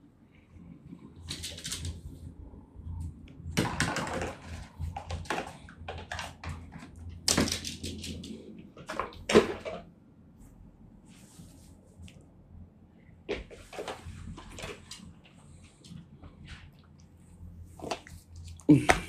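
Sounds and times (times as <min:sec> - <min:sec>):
knocks and clicks of objects handled: 0:03.5 - 0:09.9.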